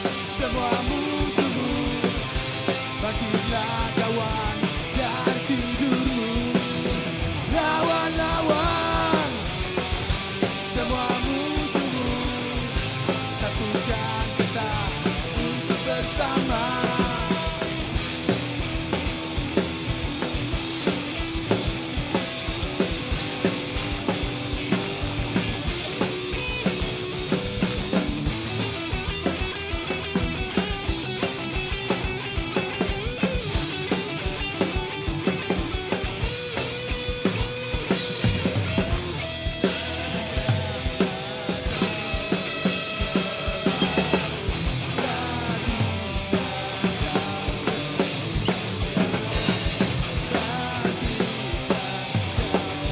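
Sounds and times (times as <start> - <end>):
drum kit beat: 0.0 - 52.9
rock band playing instrumental: 0.0 - 52.9.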